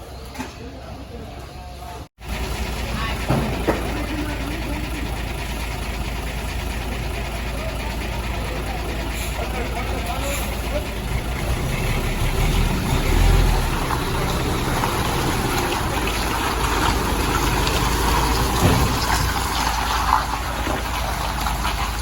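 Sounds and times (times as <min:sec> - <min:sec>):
boat engine rumbling: 0:00.0 - 0:22.0
water rushing and splashing: 0:12.4 - 0:22.0.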